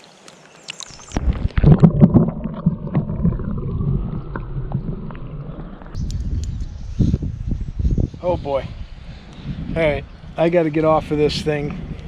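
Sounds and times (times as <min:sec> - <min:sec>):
underwater water sloshing: 0:01.1 - 0:06.0.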